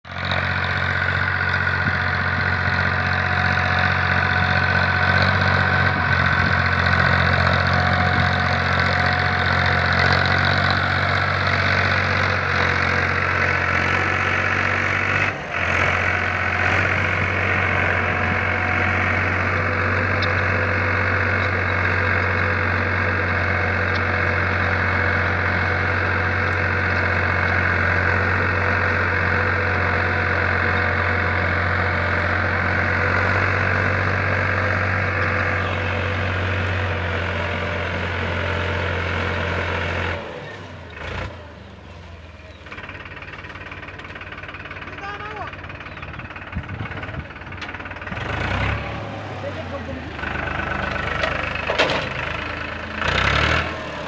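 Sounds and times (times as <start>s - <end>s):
tractor diesel engine running: 0.0s - 54.0s.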